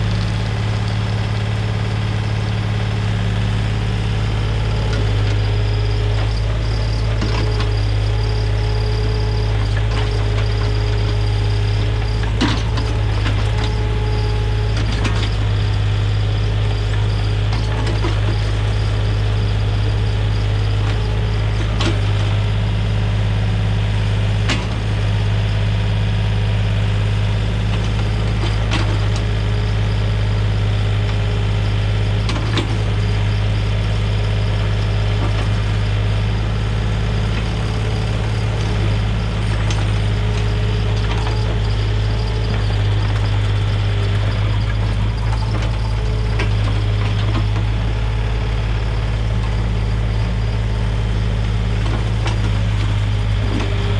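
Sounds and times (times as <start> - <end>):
excavator diesel engine running: 0.0 - 53.9.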